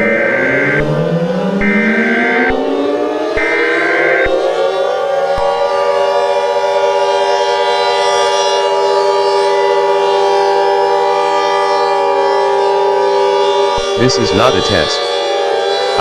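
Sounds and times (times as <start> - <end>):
warning siren wailing: 0.0 - 16.0
short high electronic tone: 13.8 - 15.0.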